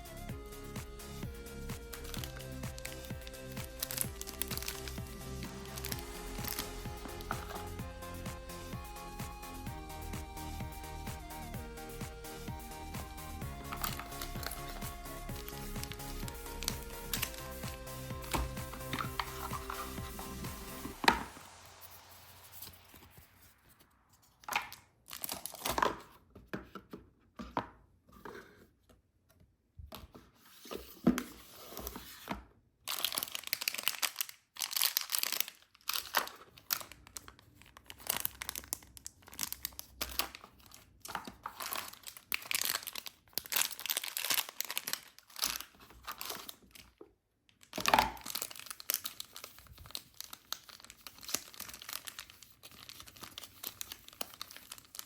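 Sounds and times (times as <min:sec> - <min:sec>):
packaging tearing and crinkling: 0:24.5 - 0:25.8, 0:32.9 - 0:47.0, 0:47.6 - 0:55.0.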